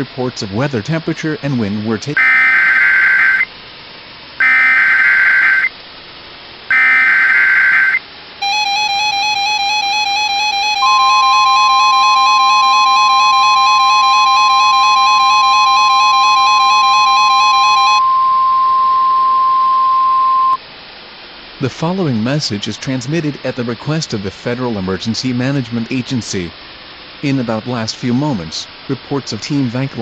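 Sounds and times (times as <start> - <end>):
harsh electronic data bursts: 2.2 - 3.5, 4.4 - 5.7, 6.7 - 20.6
steady alert tone: 6.7 - 20.6
electronic music with chime-like tone: 7.8 - 20.6.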